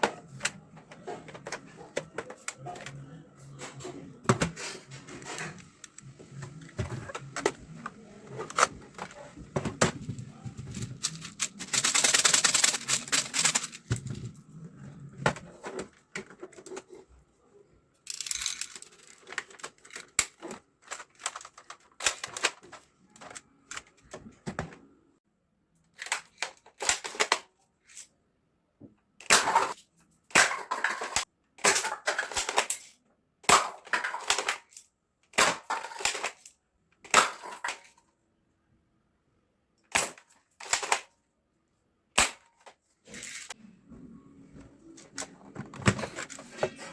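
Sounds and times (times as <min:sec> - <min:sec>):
packaging rustling: 0:10.7 - 0:14.0.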